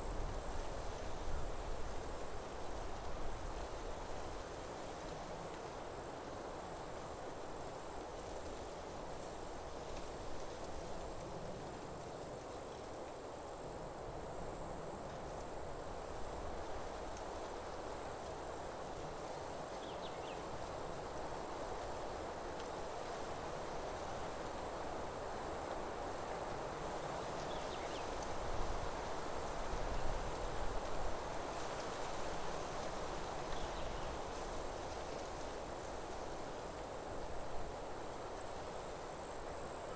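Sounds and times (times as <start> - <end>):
insects trilling: 19.6 - 22.1, 22.8 - 31.4.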